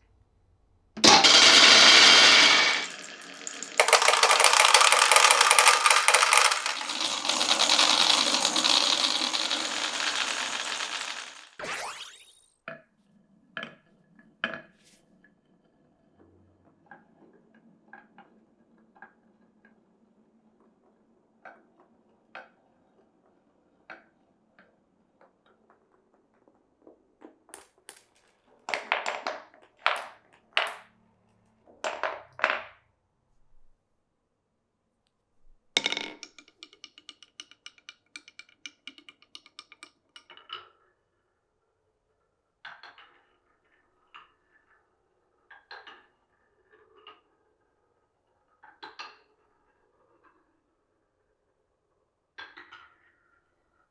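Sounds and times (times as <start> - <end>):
marbles rolling on wood: 1.0 - 12.2, 35.8 - 40.4
marbles clacking: 1.0 - 12.3.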